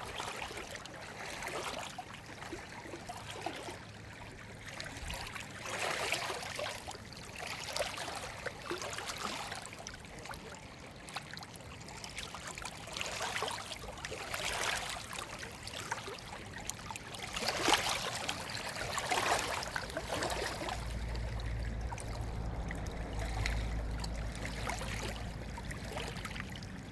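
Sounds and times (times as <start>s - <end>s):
running water surging: 2.4s - 26.9s
low rumble: 19.8s - 26.9s.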